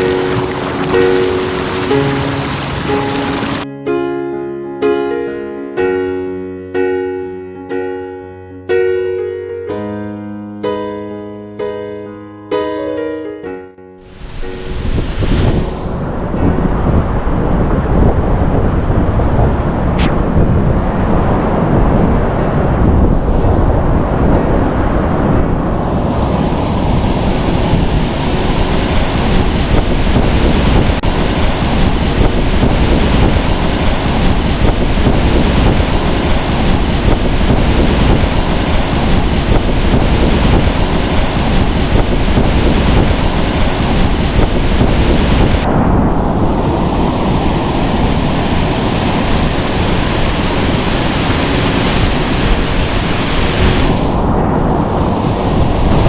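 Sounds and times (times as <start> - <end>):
waterfall roaring: 0.0 - 3.7, 14.1 - 16.0, 25.5 - 45.7, 46.3 - 56.0.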